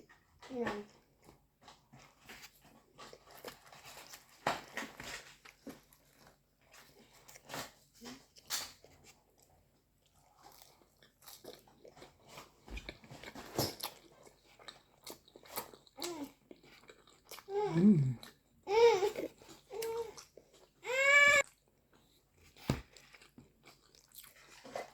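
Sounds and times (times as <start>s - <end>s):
wet chewing and bites: 2.0s - 18.4s, 21.4s - 24.9s.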